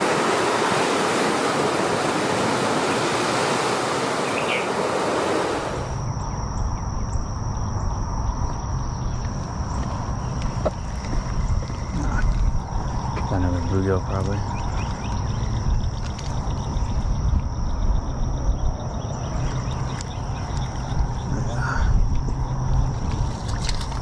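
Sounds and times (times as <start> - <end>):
steady rushing noise: 0.0 - 6.2
faint high whine: 0.0 - 24.0
wind rumble on microphone: 0.0 - 24.0.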